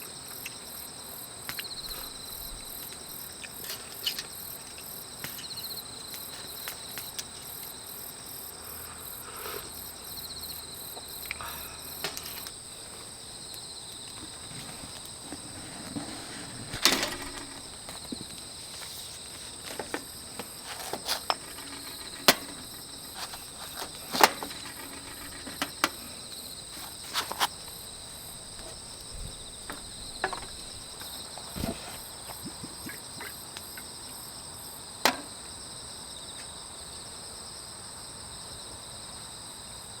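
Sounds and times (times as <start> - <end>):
insect chorus trilling: 0.0 - 40.0
sharp clicks and knocks: 11.3 - 12.6, 14.1 - 18.6, 19.7 - 26.1, 28.5 - 33.4.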